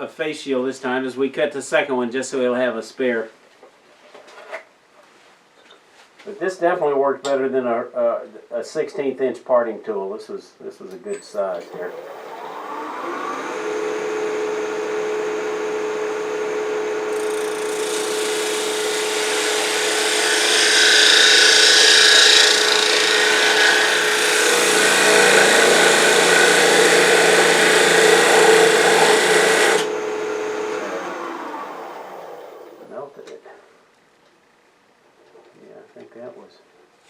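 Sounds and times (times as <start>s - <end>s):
lathe motor humming: 11.6s - 32.9s.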